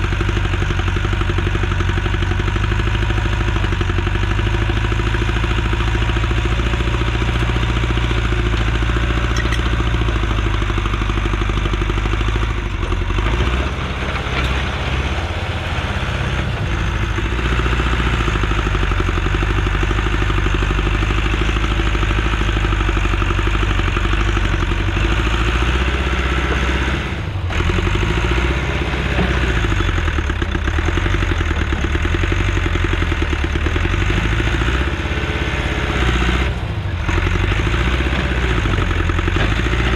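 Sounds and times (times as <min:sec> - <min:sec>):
loader engine under load: 0:00.0 - 0:39.9.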